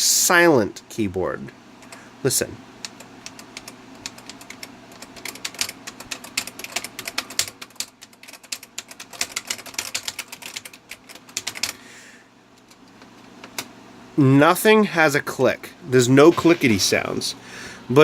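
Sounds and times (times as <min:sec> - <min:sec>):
keyboard typing: 0:02.8 - 0:11.8.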